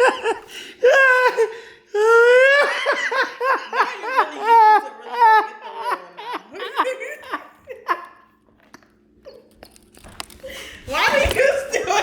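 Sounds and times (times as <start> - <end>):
person laughing hard: 0.0 - 8.3.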